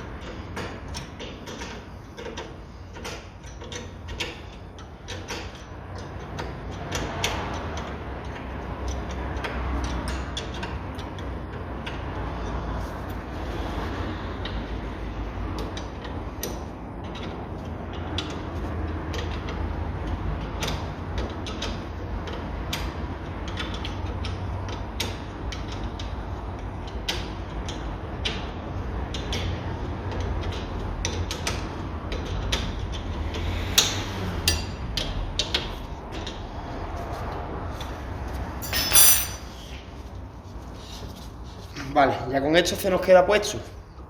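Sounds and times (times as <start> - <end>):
metal scrape: 33.5 - 35.0, 38.6 - 39.8
metal tools clicking and knocking: 33.8 - 35.1, 38.6 - 39.7.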